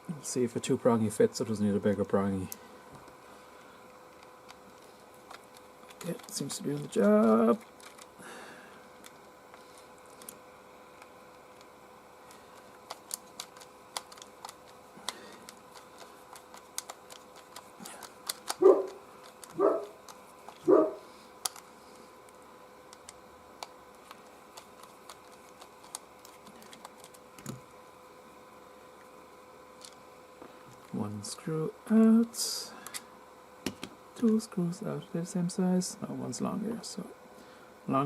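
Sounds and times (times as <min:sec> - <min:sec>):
screwdriver clicking on screws: 0:12.9 - 0:14.8.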